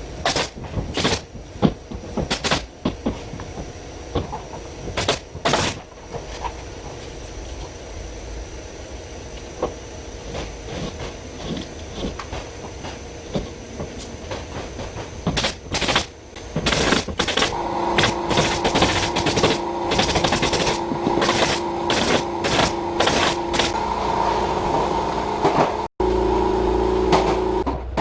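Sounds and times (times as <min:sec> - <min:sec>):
power tool motor whine: 0:15.4 - 0:27.6.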